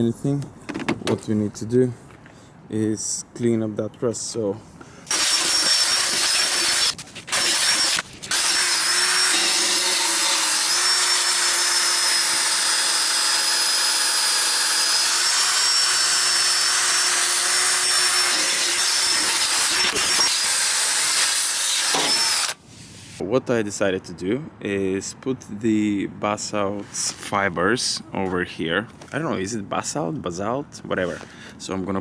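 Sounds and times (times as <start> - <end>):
power tool scrubbing rust off metal: 5.1 - 22.6.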